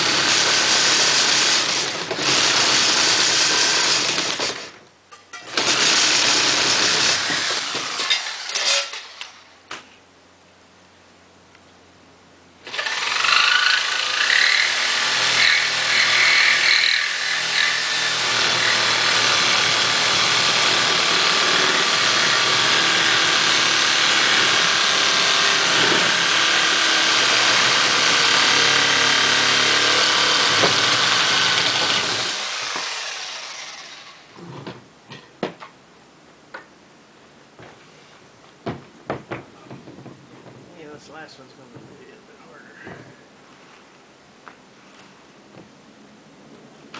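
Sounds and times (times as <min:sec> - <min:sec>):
power tool cutting wood: 0:00.0 - 0:04.7, 0:05.5 - 0:09.4, 0:12.6 - 0:34.4.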